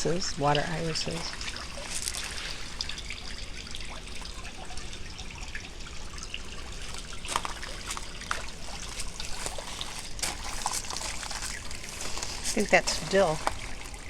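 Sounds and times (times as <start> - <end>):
water trickling: 0.0 - 14.0.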